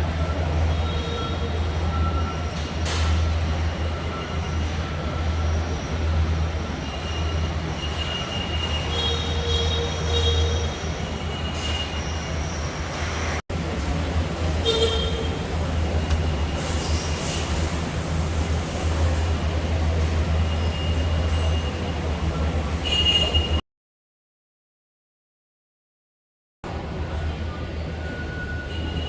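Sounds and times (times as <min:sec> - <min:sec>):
high-pitched machine squeals: 0:00.3 - 0:02.7, 0:03.5 - 0:13.4, 0:20.3 - 0:22.1, 0:27.8 - 0:29.0.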